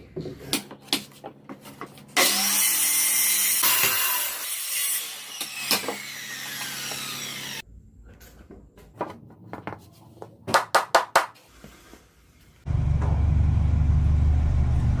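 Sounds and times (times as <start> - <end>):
power tool running: 2.2 - 7.6
low machine hum: 12.7 - 15.0.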